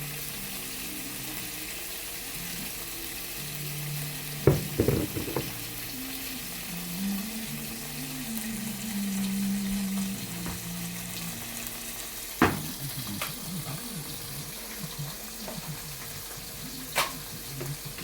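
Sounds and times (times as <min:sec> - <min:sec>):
food sizzling in a pan: 0:00.0 - 0:18.0
utensil knocking against pan: 0:04.5 - 0:05.6.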